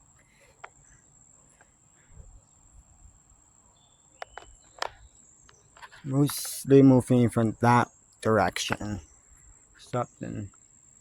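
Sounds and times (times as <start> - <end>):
crickets trilling: 0.0 - 11.0
light clicks: 4.2 - 6.6.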